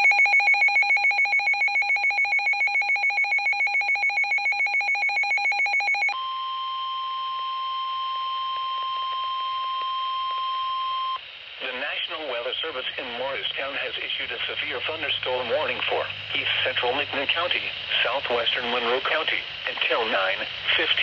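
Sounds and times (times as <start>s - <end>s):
pulsing electronic alarm tone: 0.0s - 11.2s
steady warning alarm tone: 0.0s - 11.2s.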